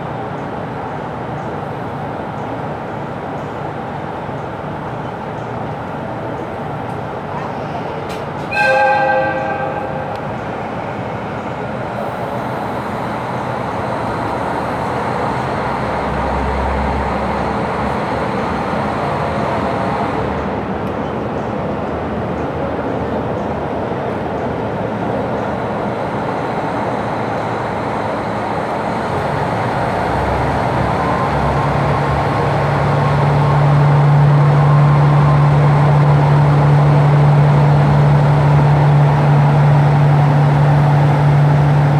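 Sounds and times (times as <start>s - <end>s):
train engine low drone: 0.0s - 41.9s
train horn blast: 8.5s - 10.7s.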